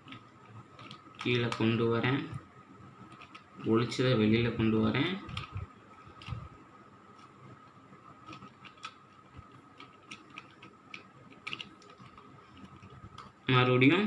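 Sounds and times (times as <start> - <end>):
puzzle cube clicking as turned: 0.1 - 1.6, 3.1 - 3.7, 8.2 - 13.4.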